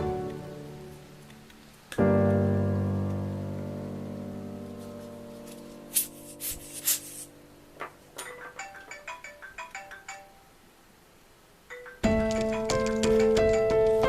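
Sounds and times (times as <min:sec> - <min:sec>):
background music: 0:00.0 - 0:07.3, 0:11.7 - 0:14.0.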